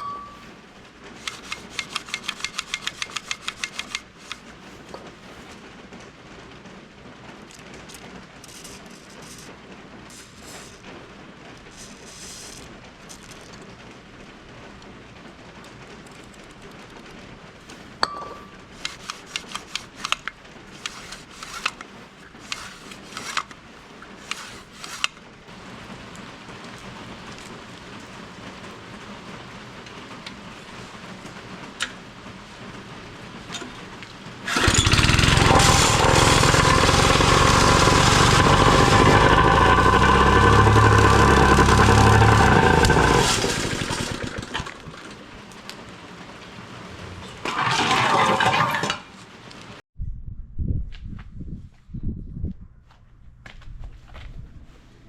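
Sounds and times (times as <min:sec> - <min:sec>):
small petrol engine running: 0:01.2 - 0:04.4, 0:20.8 - 0:21.8, 0:22.4 - 0:23.5, 0:33.5 - 0:45.3, 0:47.4 - 0:49.0.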